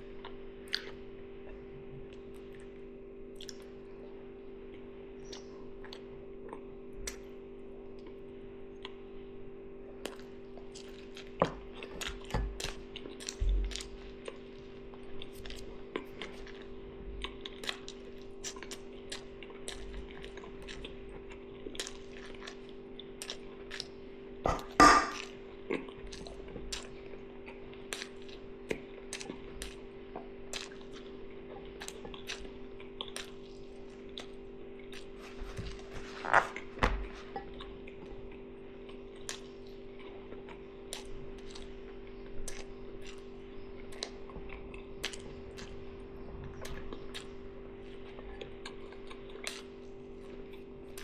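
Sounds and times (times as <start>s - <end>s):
steady hum: 0.0s - 51.0s
chewing: 0.2s - 1.0s, 3.4s - 3.9s, 4.7s - 7.2s, 9.9s - 51.0s
cutlery clinking on a plate: 24.5s - 25.2s.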